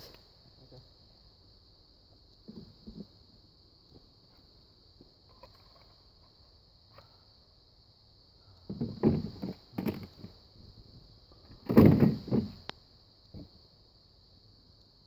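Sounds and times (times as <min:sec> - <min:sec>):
faint high hiss: 0:00.0 - 0:15.0
dull knocks and clunks: 0:08.7 - 0:10.3, 0:11.4 - 0:12.6.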